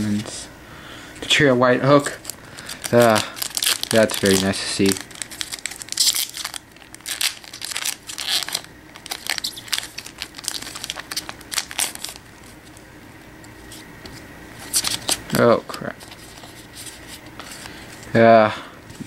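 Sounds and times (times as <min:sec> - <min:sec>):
foil wrapper crinkling: 0:02.1 - 0:12.6.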